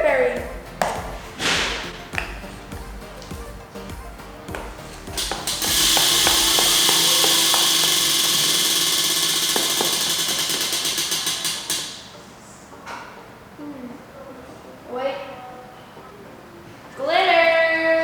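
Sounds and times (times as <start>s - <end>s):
aerosol can spraying hiss: 5.3s - 9.9s.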